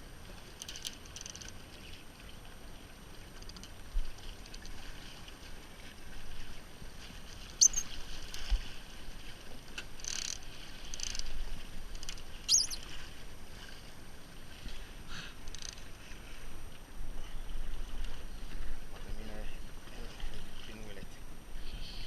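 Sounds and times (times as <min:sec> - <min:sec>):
water sloshing and splashing: 0:00.0 - 0:21.2
brief high squeaks: 0:07.6 - 0:07.9, 0:12.5 - 0:12.8.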